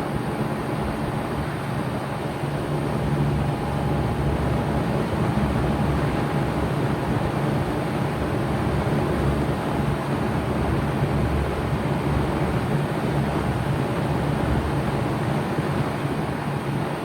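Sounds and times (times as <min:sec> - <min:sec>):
faint steady whine: 0:00.0 - 0:17.0
heat pump fan and compressor: 0:00.0 - 0:17.0.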